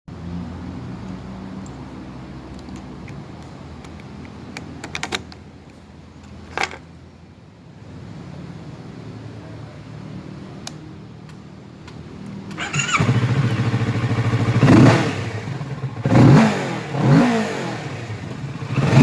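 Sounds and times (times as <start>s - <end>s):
motorcycle engine idling: 12.6s - 16.1s.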